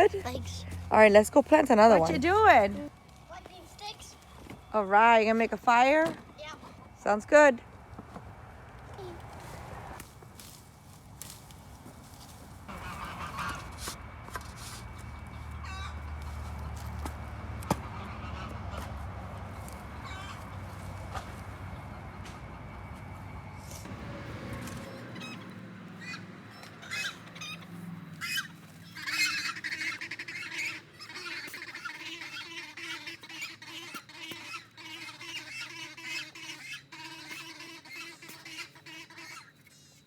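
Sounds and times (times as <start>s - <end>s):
poultry squawking and honking: 0.0s - 7.5s, 12.6s - 39.7s
low rumble: 6.7s - 26.2s.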